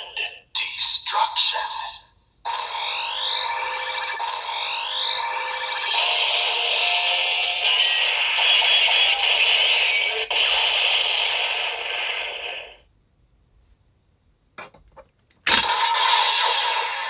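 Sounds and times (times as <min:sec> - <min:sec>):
toy electronic sound effect: 0:02.5 - 0:11.9, 0:15.5 - 0:17.0.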